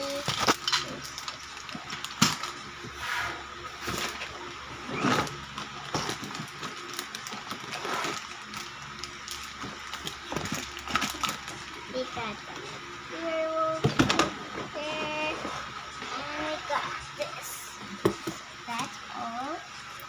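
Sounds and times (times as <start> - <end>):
plastic packaging rustling: 0.0 - 3.0, 3.6 - 12.4.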